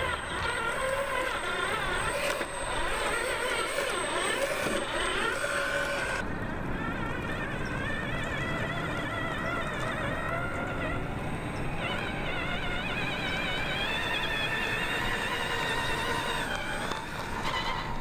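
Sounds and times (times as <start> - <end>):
electric motor whining: 0.0 - 18.0.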